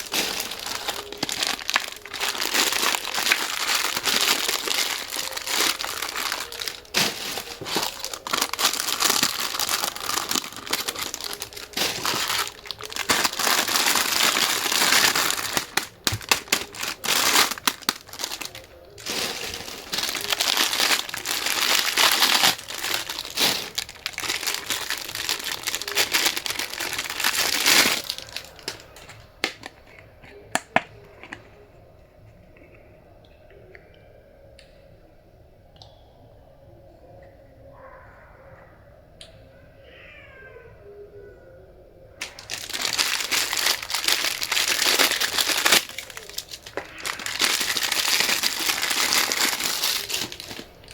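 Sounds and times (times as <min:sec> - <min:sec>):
material crinkling and rustling: 0:00.0 - 0:31.4, 0:42.2 - 0:50.9.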